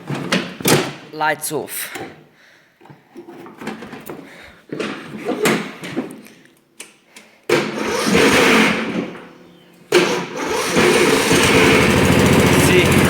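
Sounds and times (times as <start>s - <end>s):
lawnmower engine cranking: 7.5s - 13.0s
lawnmower engine running: 7.6s - 9.1s, 9.9s - 13.0s.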